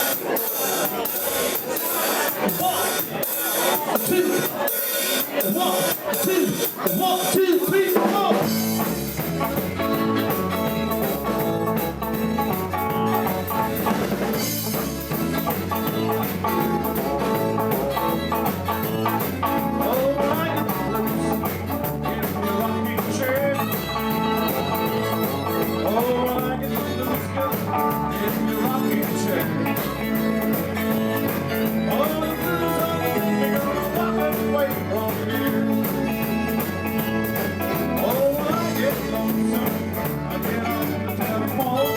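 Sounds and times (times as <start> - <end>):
drum kit steady beat: 0.0 - 41.9
electric guitar playing: 8.4 - 41.9.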